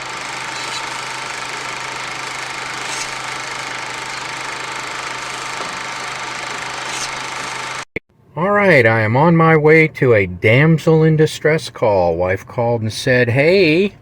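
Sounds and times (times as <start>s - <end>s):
car engine running: 0.0s - 7.9s.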